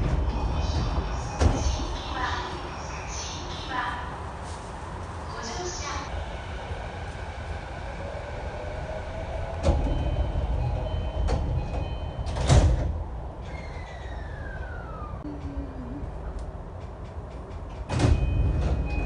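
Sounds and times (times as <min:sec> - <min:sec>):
train doors sliding: 0:00.0 - 0:02.5, 0:08.5 - 0:15.6, 0:16.2 - 0:19.0.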